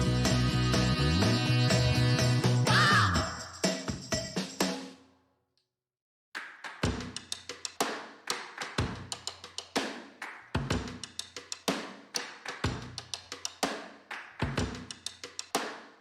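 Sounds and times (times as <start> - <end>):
drum kit beat: 0.0 - 5.0, 6.8 - 16.0.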